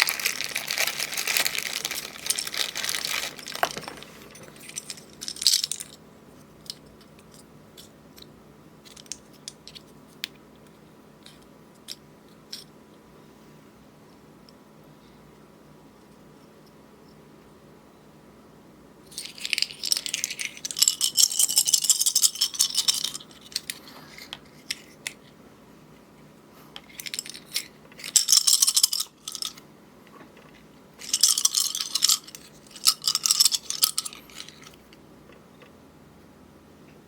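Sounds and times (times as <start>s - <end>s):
packaging crinkling: 0.0s - 5.0s
parts rattling: 0.0s - 6.0s, 31.0s - 35.0s.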